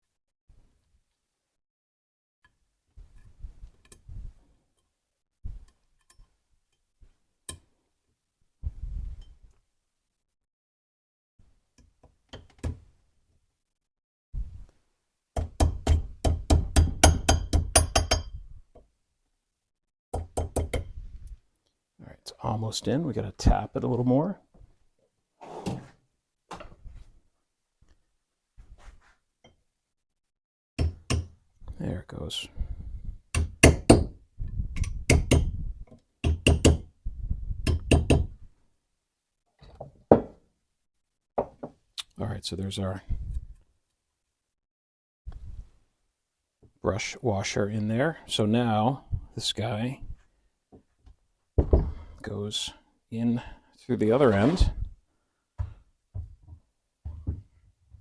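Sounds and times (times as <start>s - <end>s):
hammer tapping metal: 15.5s - 18.4s.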